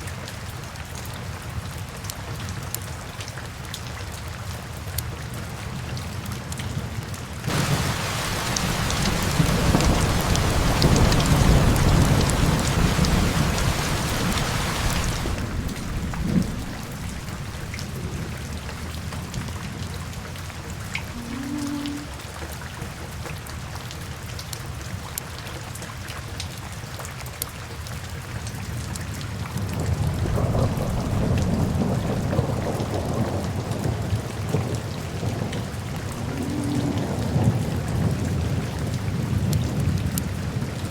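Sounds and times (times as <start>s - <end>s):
steady rain: 0.0s - 40.9s
low rumble of thunder: 7.5s - 23.0s, 29.3s - 40.9s.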